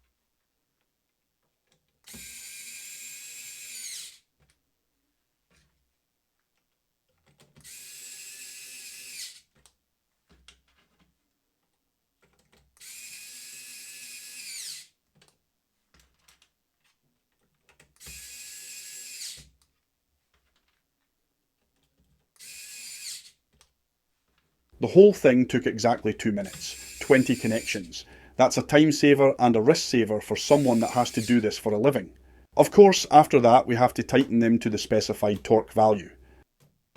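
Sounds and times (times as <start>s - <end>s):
cordless screwdriver motor whining: 2.0s - 4.2s, 7.6s - 9.5s, 12.8s - 14.9s, 18.0s - 19.5s, 22.4s - 23.4s, 26.4s - 28.1s, 30.4s - 31.6s.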